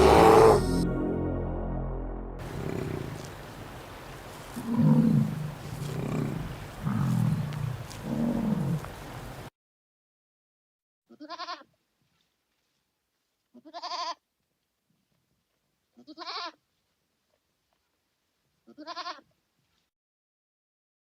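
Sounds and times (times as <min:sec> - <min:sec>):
goat bleating: 0:11.1 - 0:11.7, 0:13.5 - 0:14.2, 0:16.0 - 0:16.6, 0:18.6 - 0:19.3.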